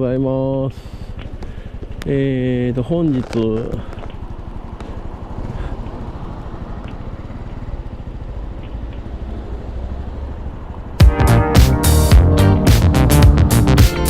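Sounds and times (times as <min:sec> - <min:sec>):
motorcycle engine idling: 0:00.0 - 0:12.2
loud music with a beat: 0:11.0 - 0:14.0.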